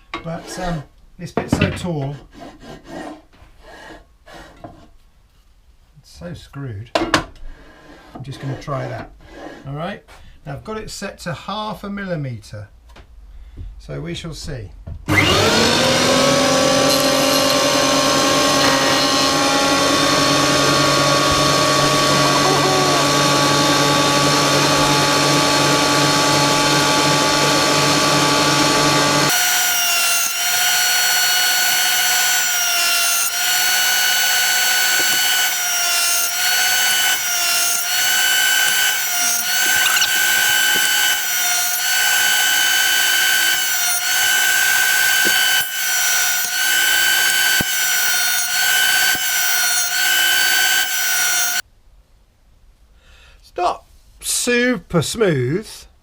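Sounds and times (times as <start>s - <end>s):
planer thicknesser motor whine: 15.1s - 51.6s.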